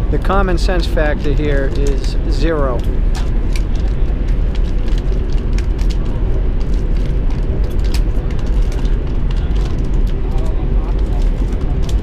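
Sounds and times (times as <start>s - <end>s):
train carriage rumble: 0.0s - 12.0s.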